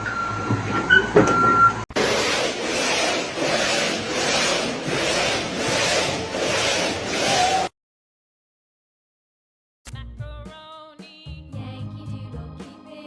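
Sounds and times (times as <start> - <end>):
tool rasping over rough surface: 1.9 - 7.7.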